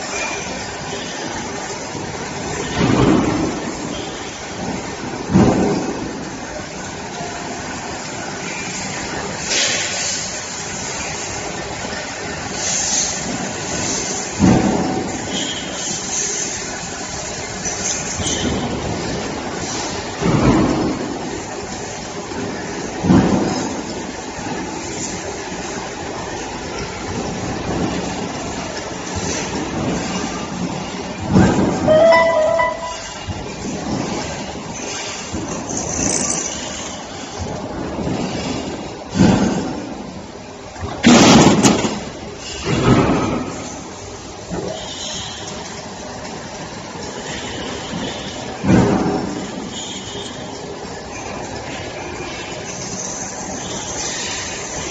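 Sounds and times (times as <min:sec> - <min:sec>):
short high-pitched squeal: 0:31.9 - 0:33.4.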